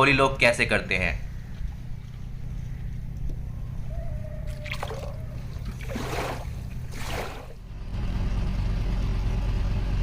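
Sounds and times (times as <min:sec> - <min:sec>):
water dripping and splashing: 0:04.5 - 0:07.6.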